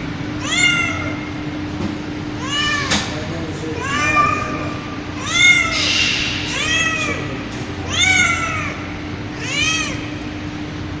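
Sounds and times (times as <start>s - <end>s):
cat meowing: 0.4s - 1.3s, 2.4s - 3.1s, 3.8s - 10.2s.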